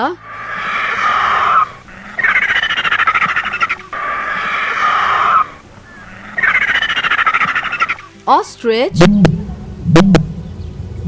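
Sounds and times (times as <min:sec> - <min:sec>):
vulture calling harshly: 0:00.0 - 0:08.1.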